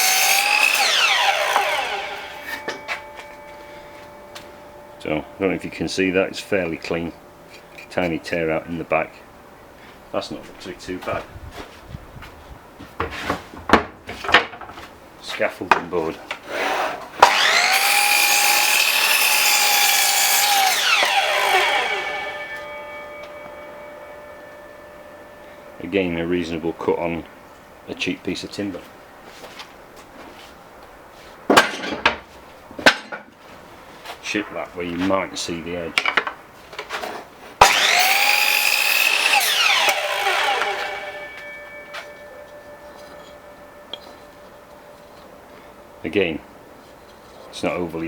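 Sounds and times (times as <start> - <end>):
saw cutting through board: 0.0 - 3.0, 16.5 - 23.2, 37.6 - 41.8
mitre saw whining: 0.0 - 6.8, 16.5 - 25.8, 37.6 - 46.0.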